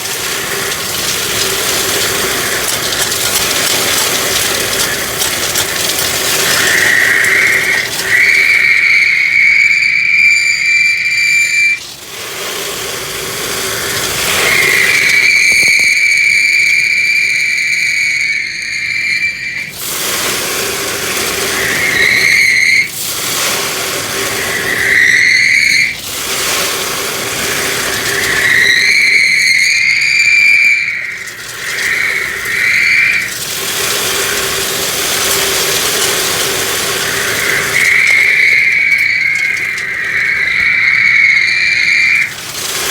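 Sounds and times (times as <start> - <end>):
air rushing with rattling: 0.0 - 16.4, 17.9 - 42.9
vacuum hose whistling: 0.0 - 42.9.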